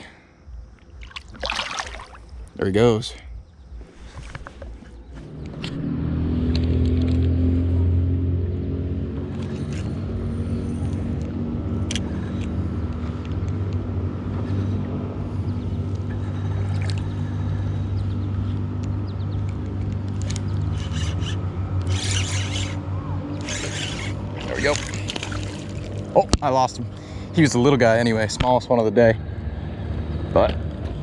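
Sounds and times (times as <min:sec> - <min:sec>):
small motor humming: 0:15.4 - 0:26.2.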